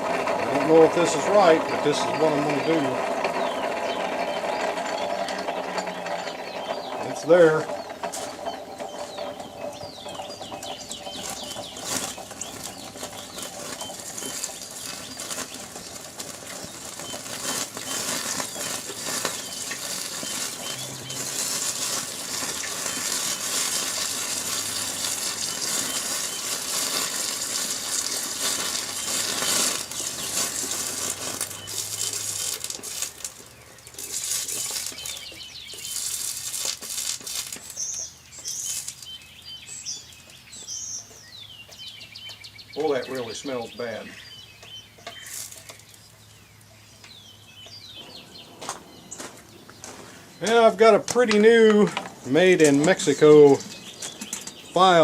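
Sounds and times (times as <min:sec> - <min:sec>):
hot metal sizzling in oil: 0:11.2 - 0:37.9.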